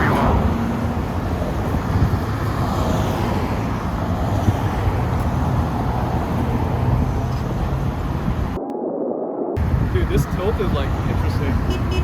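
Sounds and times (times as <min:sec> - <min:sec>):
cars passing on busy street: 0:00.0 - 0:08.6, 0:09.6 - 0:12.0
heavy low rumble: 0:07.0 - 0:11.1.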